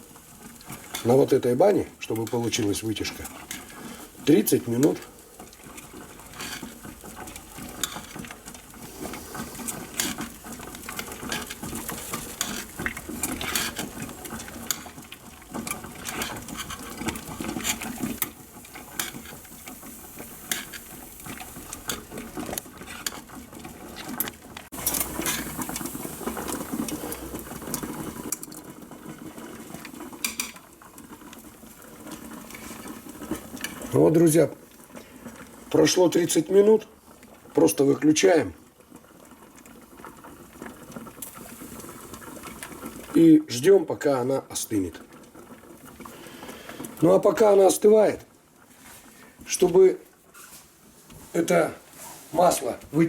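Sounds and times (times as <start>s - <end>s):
utensil scraping and knocking pot: 2.0s - 28.5s.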